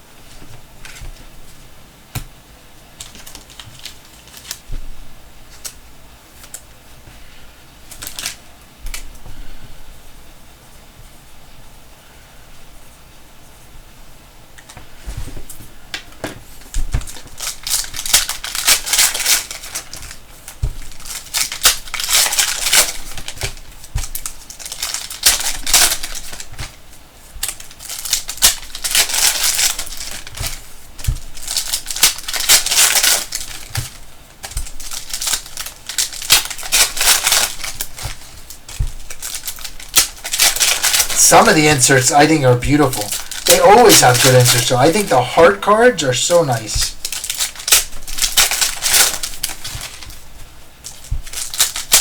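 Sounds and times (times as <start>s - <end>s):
cards being flipped and shuffled: 27.9s - 50.2s.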